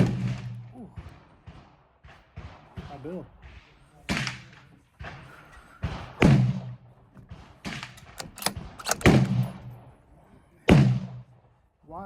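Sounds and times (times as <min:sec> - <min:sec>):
loud rifle shots: 0:00.0 - 0:02.9, 0:05.8 - 0:09.8, 0:10.7 - 0:11.2.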